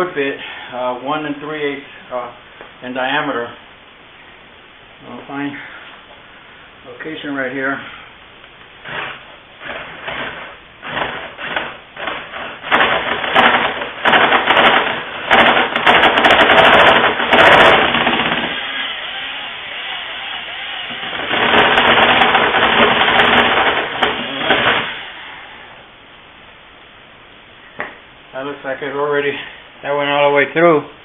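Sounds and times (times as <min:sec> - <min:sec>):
power drill boring through wood: 0:08.8 - 0:25.5.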